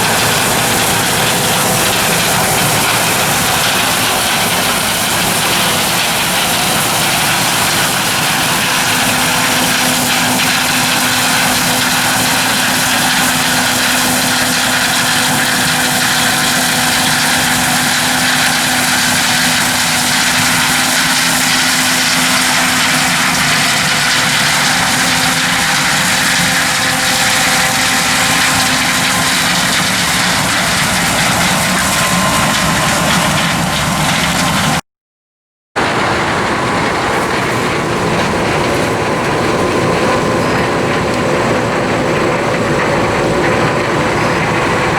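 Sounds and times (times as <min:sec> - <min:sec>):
heavy machinery engine droning: 0:00.0 - 0:34.8, 0:35.8 - 0:44.9.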